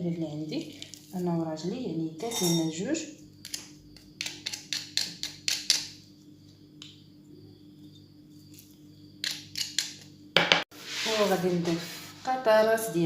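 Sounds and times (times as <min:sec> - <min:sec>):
faint steady hum: 0:00.0 - 0:10.4.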